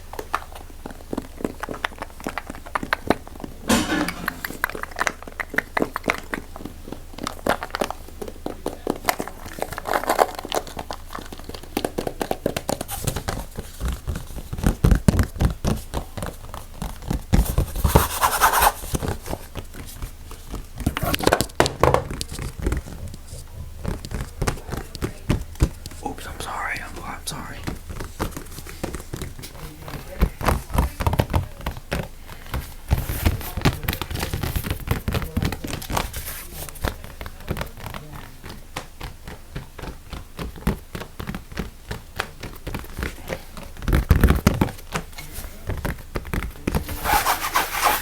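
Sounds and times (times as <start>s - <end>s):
crinkling: 0.0s - 48.0s
rapid tapping on objects: 0.0s - 48.0s
scratching: 1.4s - 6.2s, 7.2s - 21.4s, 39.8s - 48.0s.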